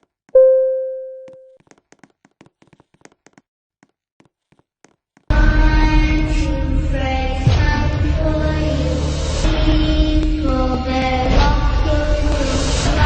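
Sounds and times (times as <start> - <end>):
ringing chime tone: 0.4 - 1.6.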